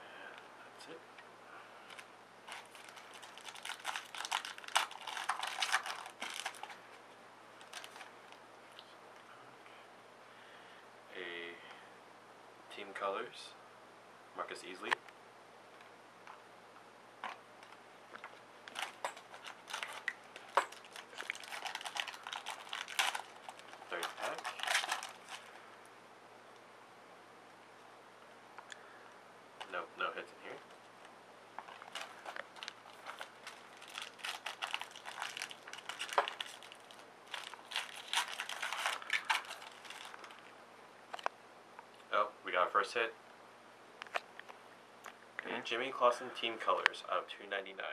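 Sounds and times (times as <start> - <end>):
card wrappers crinkling: 1.8 - 7.0, 7.6 - 8.4, 18.3 - 25.6, 31.5 - 40.5.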